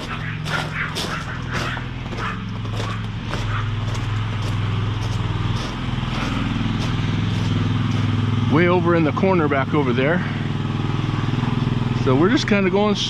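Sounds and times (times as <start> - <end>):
dog barking: 0.0 - 4.4
gravel being hauled: 0.0 - 11.4
skid steer engine running: 0.0 - 13.0.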